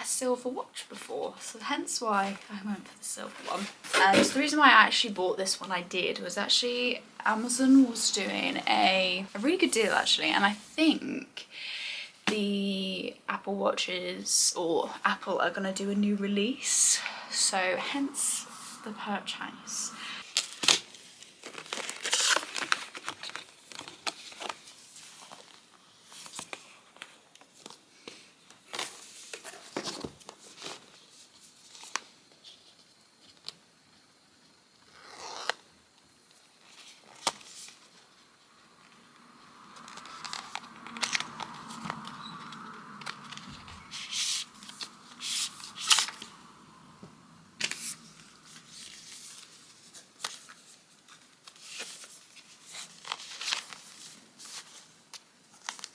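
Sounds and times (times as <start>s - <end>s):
paper crinkling: 20.2s - 33.5s, 47.6s - 55.9s.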